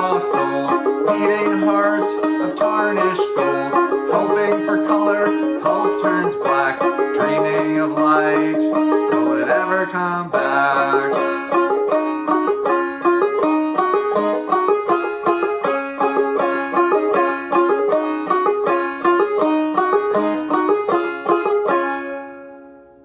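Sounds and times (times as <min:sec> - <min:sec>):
banjo picking and strumming: 0:00.0 - 0:23.0.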